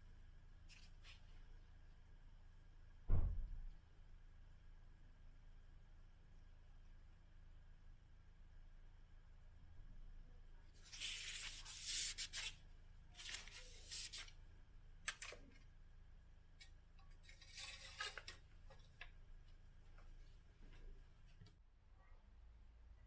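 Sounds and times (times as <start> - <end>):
rustling and rubbing: 10.8 - 12.6, 13.2 - 14.3.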